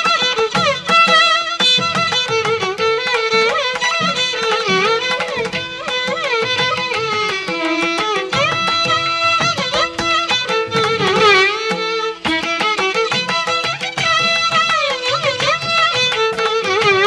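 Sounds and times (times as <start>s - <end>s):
violin melody: 0.0s - 17.0s.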